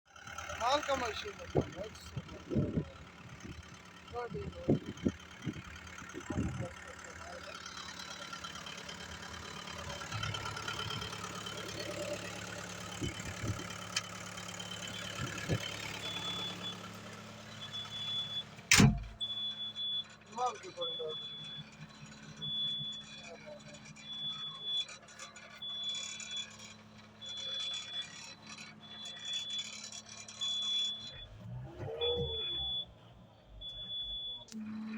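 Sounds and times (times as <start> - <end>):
diesel engine idling: 0.1 - 34.9
bulldozer warning alarm beeping: 0.2 - 34.9
low rumbling: 0.6 - 16.4.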